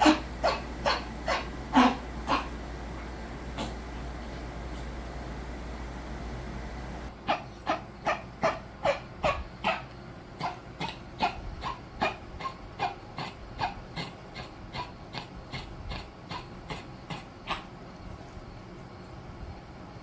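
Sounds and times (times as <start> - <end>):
dog coughing: 0.0 - 5.0, 7.3 - 17.6.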